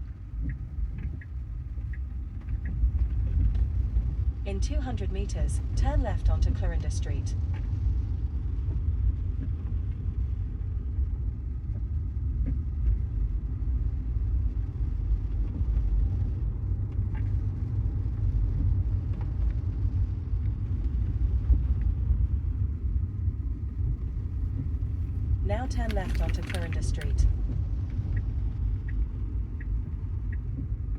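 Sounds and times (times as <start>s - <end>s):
road and tyre rumble in car cabin: 0.0s - 30.9s
faint ticks: 0.4s - 3.7s.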